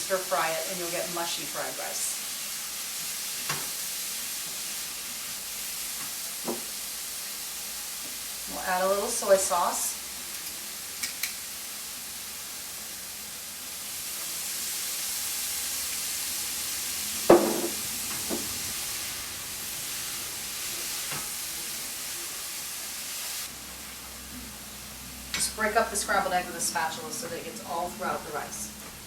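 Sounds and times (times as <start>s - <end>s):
food sizzling in a hot pan: 0.0s - 29.0s
utensil knocking against pan: 17.3s - 18.5s.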